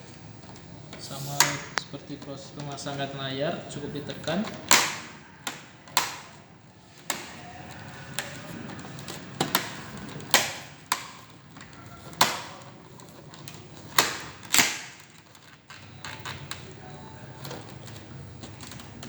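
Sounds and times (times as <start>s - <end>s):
plastic clips snapping into place: 0.9s - 1.9s, 4.2s - 6.4s, 7.0s - 16.6s.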